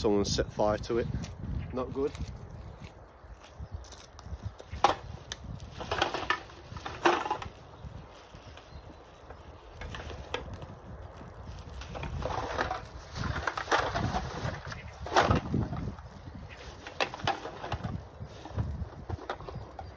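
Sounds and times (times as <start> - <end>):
rubbish clacking and rattling: 4.7 - 10.7, 11.6 - 19.9.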